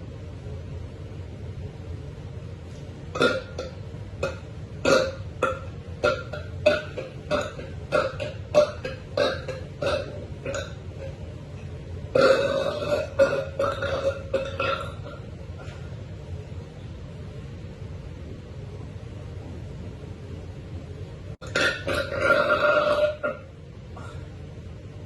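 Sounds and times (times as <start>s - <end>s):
woman burping: 3.2s - 10.8s, 12.1s - 15.2s, 21.4s - 24.2s.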